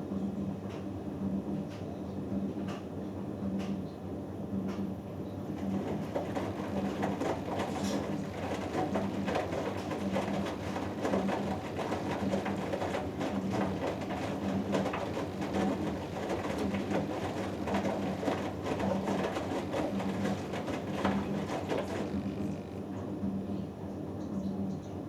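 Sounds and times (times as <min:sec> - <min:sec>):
washing machine swishing: 0:05.7 - 0:22.8
low motor hum: 0:17.2 - 0:23.8.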